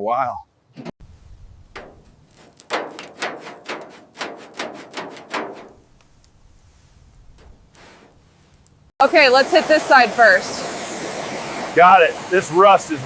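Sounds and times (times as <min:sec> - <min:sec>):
sharp ringing knocks: 0:01.8 - 0:05.8.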